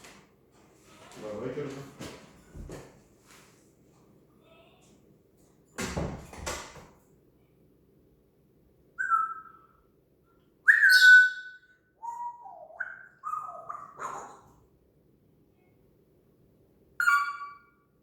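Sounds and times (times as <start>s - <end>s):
parrot whistling: 9.0s - 9.7s, 10.7s - 13.7s, 17.0s - 17.7s.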